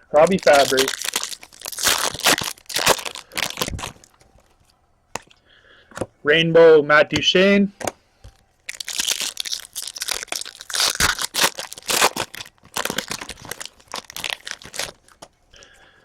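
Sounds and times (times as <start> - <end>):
foil wrapper tearing and crinkling: 0.1 - 4.1, 8.7 - 15.1.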